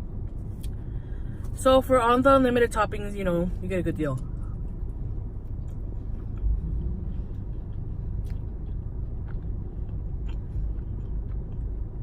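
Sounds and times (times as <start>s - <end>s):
low rumble in car cabin: 0.0s - 12.0s
person chewing with mouth open: 4.3s - 12.0s.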